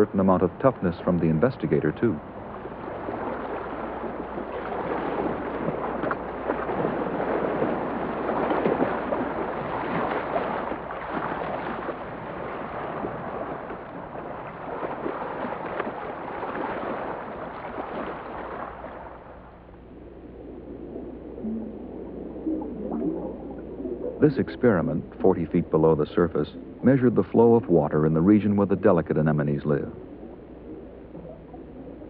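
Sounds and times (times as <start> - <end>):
churning bubbling water: 0.0 - 32.0.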